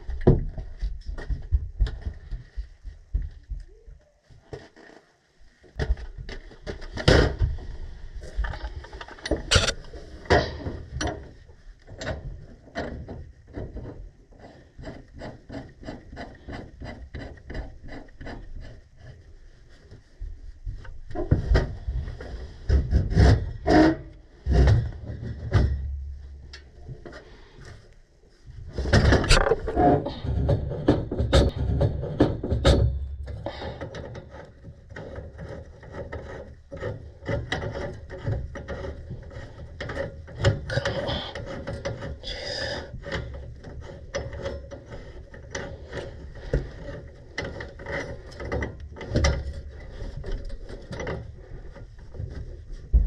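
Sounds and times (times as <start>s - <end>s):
metal tools scraping and knocking: 8.4s - 11.4s, 28.9s - 52.5s.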